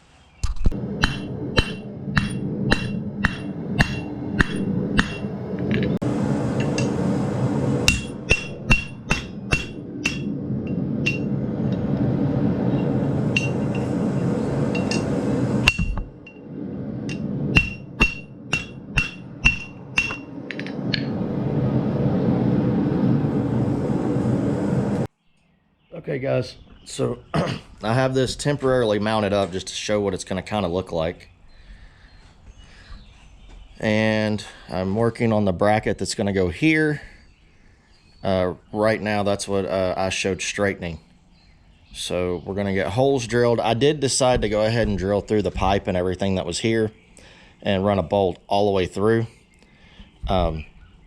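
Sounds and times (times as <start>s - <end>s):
steady rushing noise: 0.6s - 25.1s
hammer striking steel on anvil: 1.0s - 5.8s, 7.8s - 11.3s, 13.3s - 13.9s, 14.8s - 16.4s, 17.1s - 21.1s.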